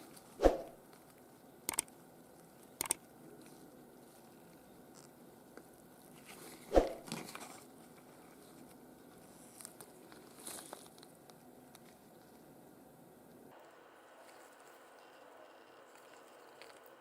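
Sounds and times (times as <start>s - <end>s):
faint rustles: 6.0s - 12.5s.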